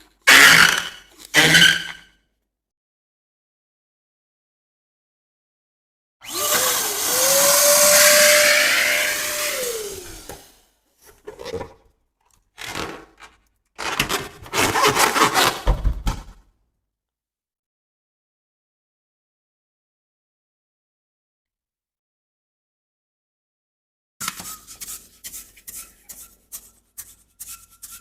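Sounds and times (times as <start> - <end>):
balloon rubber squeaking: 0.2 - 2.0, 13.8 - 15.8.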